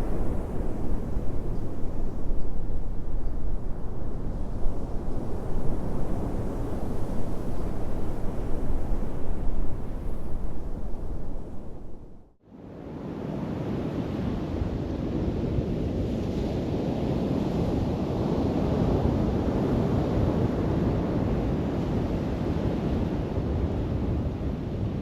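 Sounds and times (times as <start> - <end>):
wind rumbling on microphone: 0.0 - 12.4.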